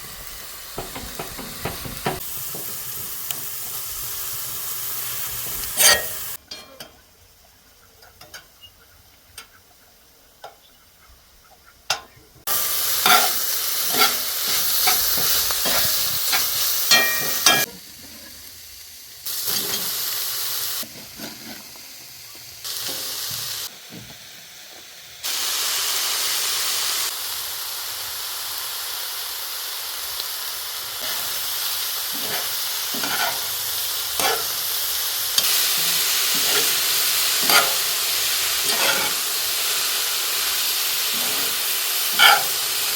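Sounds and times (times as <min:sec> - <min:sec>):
food sizzling: 0:00.0 - 0:06.9, 0:12.4 - 0:42.9
utensil clattering on cookware: 0:00.8 - 0:02.7, 0:13.0 - 0:17.7, 0:37.4 - 0:37.9, 0:41.1 - 0:42.6.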